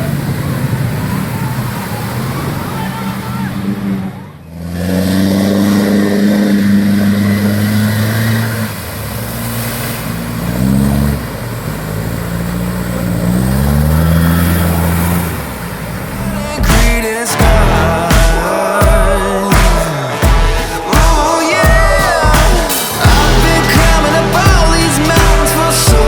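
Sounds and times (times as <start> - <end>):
off-road vehicle engine revving: 0.0 - 18.2, 19.5 - 26.0.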